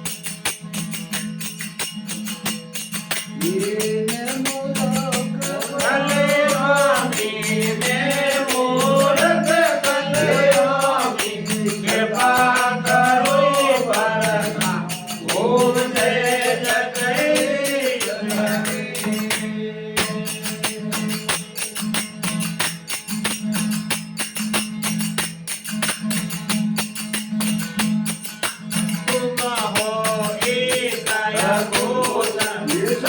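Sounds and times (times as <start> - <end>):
jingling percussion beat: 0.0 - 33.0
man singing devotional melody: 3.3 - 21.4, 28.9 - 33.0.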